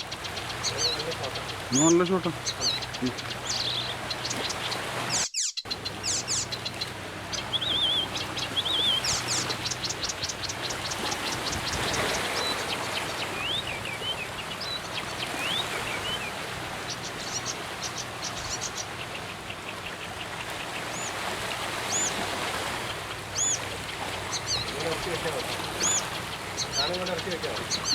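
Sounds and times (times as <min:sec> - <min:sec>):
songbirds singing and calling: 0:00.0 - 0:27.9
steady background hiss: 0:21.0 - 0:27.9.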